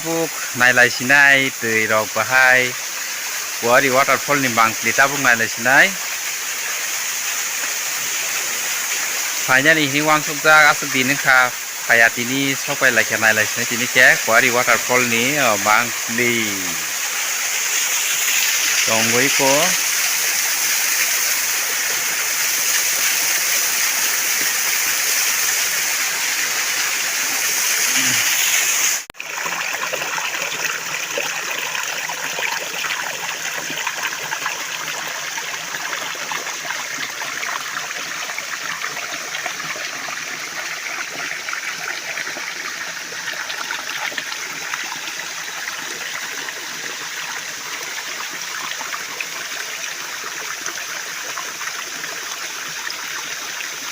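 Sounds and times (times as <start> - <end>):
waterfall rushing: 7.4 - 29.1.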